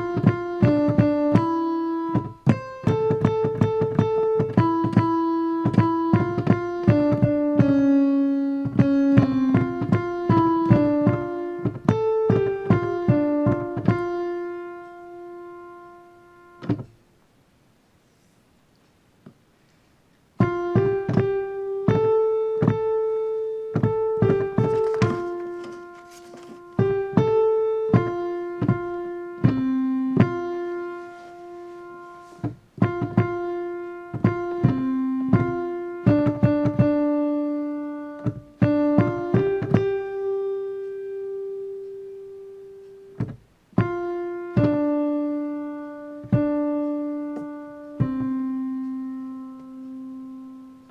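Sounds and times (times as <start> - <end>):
slow piano melody with chords: 0.0 - 17.8, 20.0 - 50.9.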